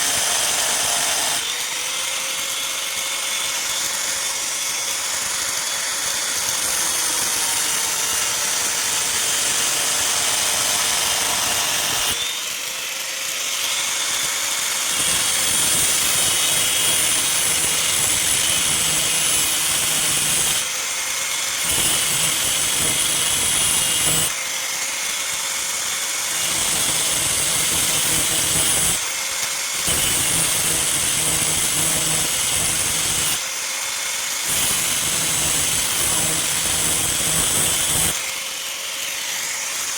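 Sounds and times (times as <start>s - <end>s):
electric grinder grinding steel: 0.0s - 39.9s.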